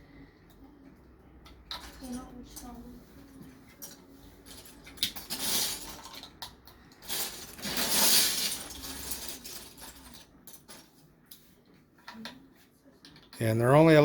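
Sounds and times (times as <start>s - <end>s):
plastic bricks clattering: 4.9s - 10.2s.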